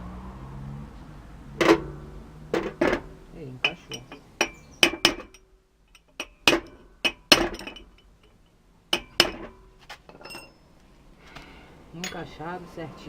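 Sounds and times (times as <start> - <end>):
hammer tapping metal: 1.6 - 8.1, 8.9 - 10.5.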